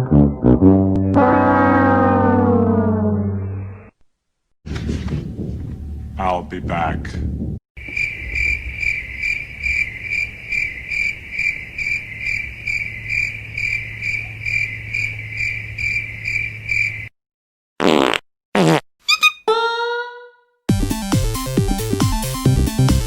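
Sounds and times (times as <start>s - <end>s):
comic falling tones: 0.0s - 3.9s
cricket chirping: 7.8s - 17.1s.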